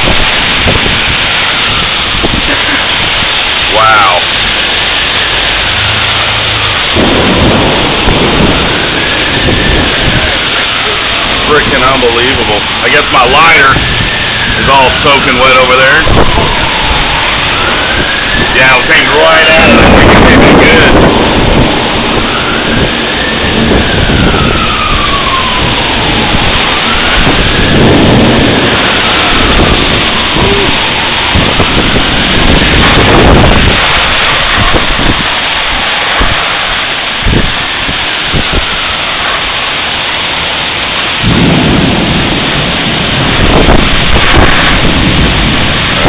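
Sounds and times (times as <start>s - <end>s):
heavy rain pouring: 0.0s - 46.0s
thunder rumbling: 0.0s - 46.0s
faint rising and falling wail: 13.0s - 33.0s.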